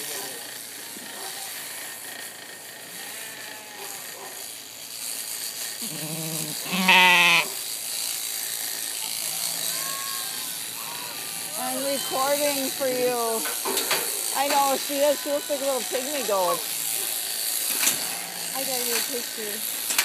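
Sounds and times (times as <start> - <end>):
sheep bleating: 2.9 - 4.2, 5.8 - 7.6, 9.0 - 13.4, 14.3 - 16.8.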